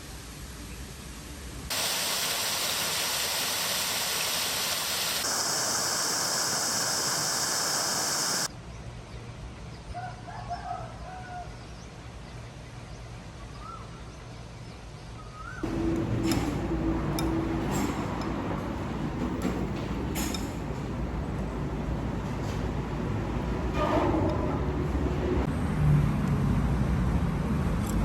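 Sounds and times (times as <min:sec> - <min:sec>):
rushing water: 0:01.7 - 0:08.5
birds chirping: 0:05.2 - 0:08.5.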